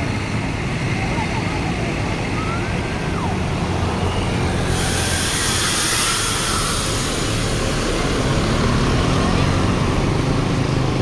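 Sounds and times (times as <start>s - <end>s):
bus engine running: 0.0s - 11.0s
loud steady hiss: 4.2s - 9.4s.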